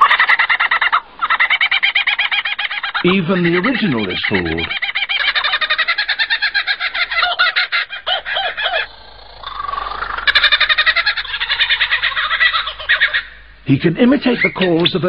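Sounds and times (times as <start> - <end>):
lyrebird mimicking bird calls: 0.0 - 15.0.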